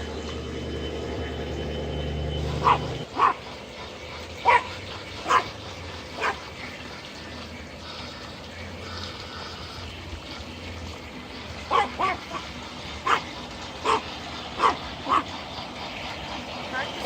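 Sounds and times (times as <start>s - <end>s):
low steady hum: 0.0s - 17.0s
dog barking: 2.5s - 3.5s, 4.4s - 5.5s, 6.2s - 6.4s, 11.7s - 12.4s, 13.0s - 15.3s.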